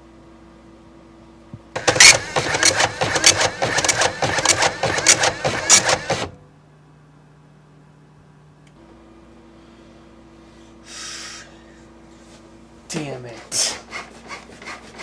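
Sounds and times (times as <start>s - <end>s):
printer clattering: 1.6s - 6.4s.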